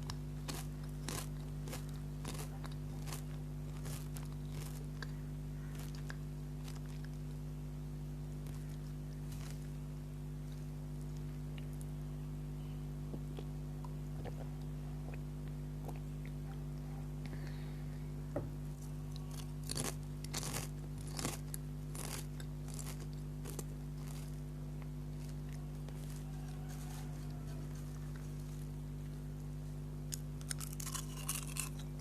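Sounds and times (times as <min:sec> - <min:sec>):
potato chips crunching: 0:00.0 - 0:07.4, 0:08.3 - 0:09.8, 0:18.8 - 0:29.5, 0:30.1 - 0:32.0
electrical hum: 0:00.0 - 0:32.0.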